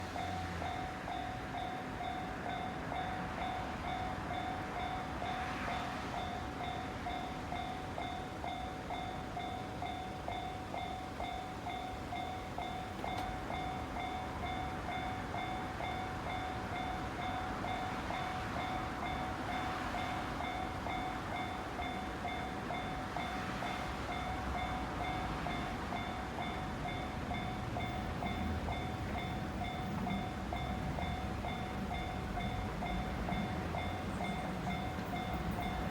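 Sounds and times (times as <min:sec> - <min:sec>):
level-crossing warning bell: 0:00.0 - 0:35.9.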